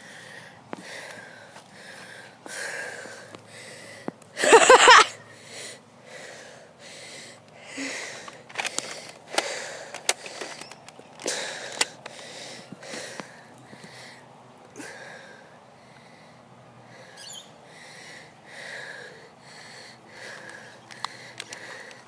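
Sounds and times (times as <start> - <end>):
heavy breathing: 0.0 - 4.2, 5.2 - 22.0
sharp clicks: 8.2 - 12.3, 20.3 - 22.0.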